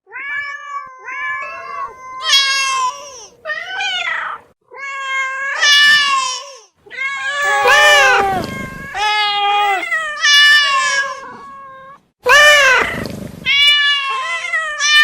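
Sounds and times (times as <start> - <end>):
cats meowing: 6.9 - 12.9.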